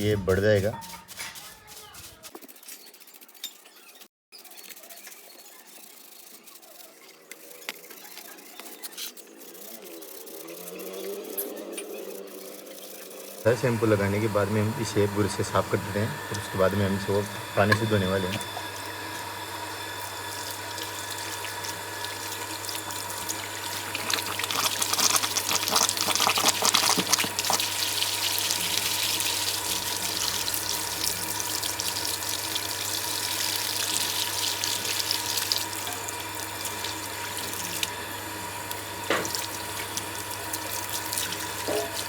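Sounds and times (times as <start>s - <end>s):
running water splashing: 13.3s - 42.0s.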